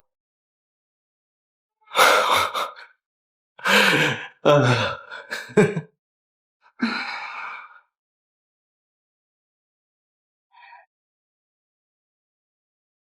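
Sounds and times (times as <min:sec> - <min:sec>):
person gasping and sighing: 0:01.9 - 0:02.9, 0:03.6 - 0:05.6, 0:06.8 - 0:07.8
person moaning: 0:03.6 - 0:05.5.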